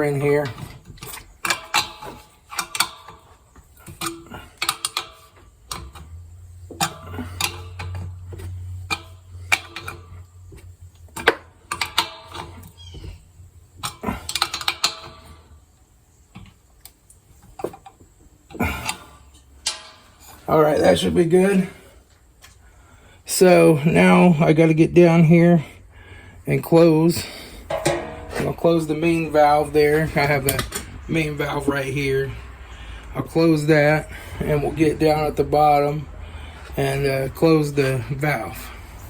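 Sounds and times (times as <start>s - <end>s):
wrench clicking and scraping on metal: 0.4s - 8.2s, 27.6s - 29.4s
low hum: 27.7s - 30.5s.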